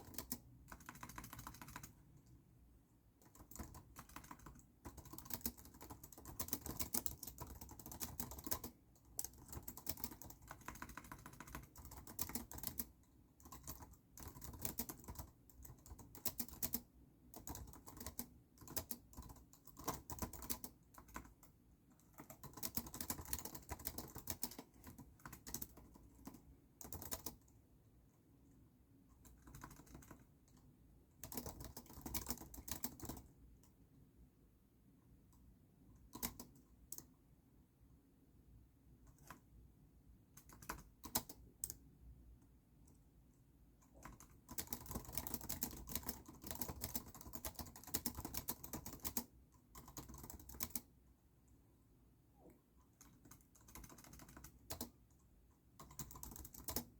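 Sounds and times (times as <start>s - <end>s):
typing on computer keyboard: 0.0s - 2.4s, 3.2s - 27.6s, 29.2s - 33.8s, 36.0s - 37.1s, 39.1s - 39.5s, 40.4s - 41.9s, 43.8s - 50.9s, 52.9s - 56.9s.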